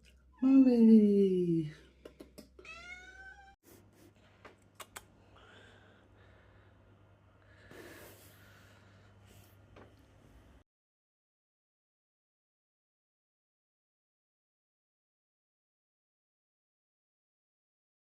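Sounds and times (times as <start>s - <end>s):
cat meowing: 2.6s - 3.6s.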